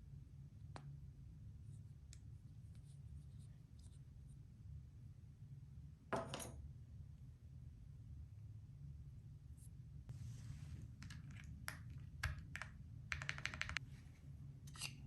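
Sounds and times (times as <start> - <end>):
keyboard parts clicking: 12.3 - 13.8.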